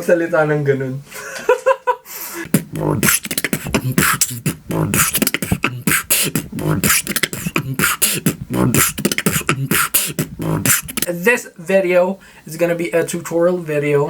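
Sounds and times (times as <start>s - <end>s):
person beatboxing: 2.4s - 11.1s.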